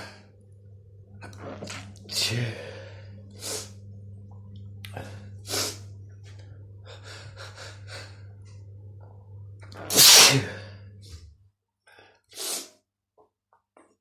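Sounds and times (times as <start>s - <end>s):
low electrical hum: 0.0s - 11.6s
person sneezing: 9.9s - 10.7s, 12.4s - 12.7s.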